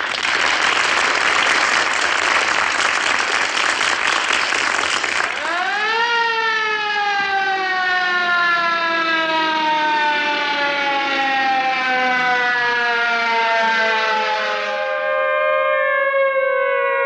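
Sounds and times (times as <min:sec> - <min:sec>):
siren falling note: 0:05.4 - 0:17.0.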